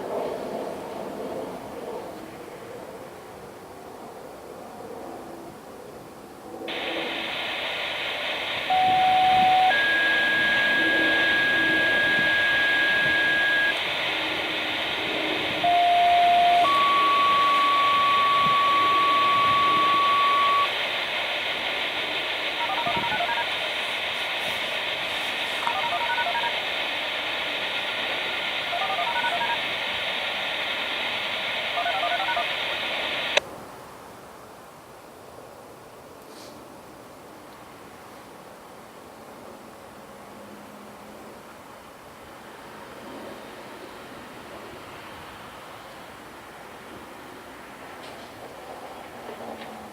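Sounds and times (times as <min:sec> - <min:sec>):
siren activation tones: 0:06.7 - 0:23.7, 0:25.6 - 0:33.4
radio channel hiss: 0:06.7 - 0:33.4
radio transmission click: 0:06.7 - 0:33.4
touch-tone beeps: 0:08.6 - 0:13.8, 0:15.4 - 0:20.8, 0:22.6 - 0:23.5, 0:25.6 - 0:26.6, 0:28.6 - 0:29.7, 0:31.7 - 0:33.4.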